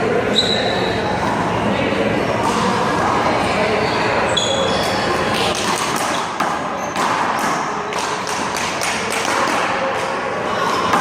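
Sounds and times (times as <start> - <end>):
handball slapping hands and wall: 5.4 - 10.1.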